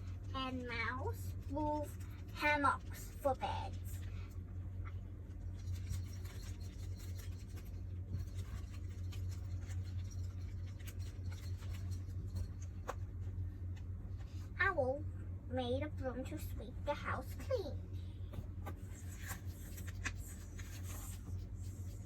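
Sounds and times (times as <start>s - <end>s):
steady low hum: 0.0s - 22.0s
faint scratching and rustling: 18.4s - 22.0s.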